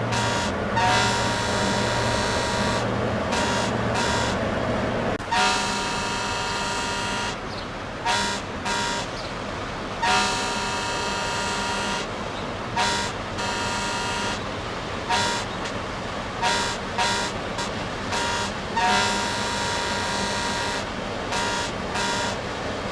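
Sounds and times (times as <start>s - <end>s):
ship's horn blasts: 0.0s - 22.9s.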